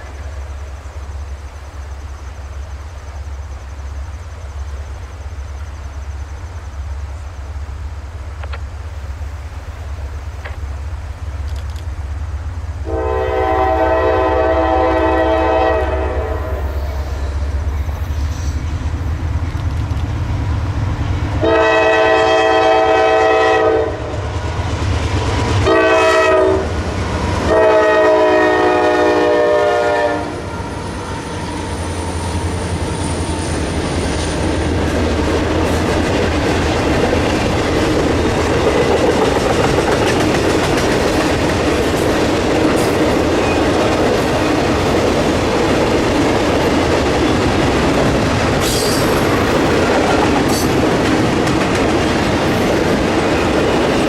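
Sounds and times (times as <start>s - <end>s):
train horn blasts: 12.8s - 17.3s, 21.4s - 24.3s, 25.6s - 26.8s, 27.4s - 30.6s
train wheels clattering on rails: 30.4s - 54.0s.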